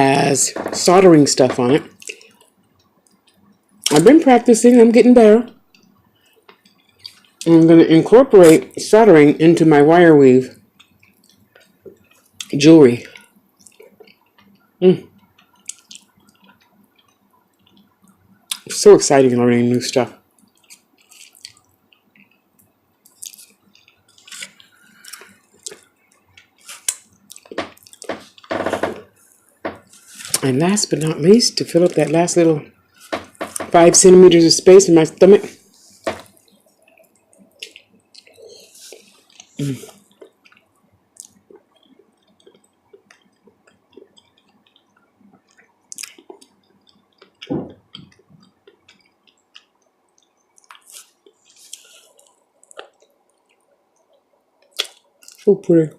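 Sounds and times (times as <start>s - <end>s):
chewing and lip smacking: 1.9s - 4.0s, 5.6s - 7.5s, 10.5s - 18.7s, 20.2s - 30.4s, 36.2s - 55.5s.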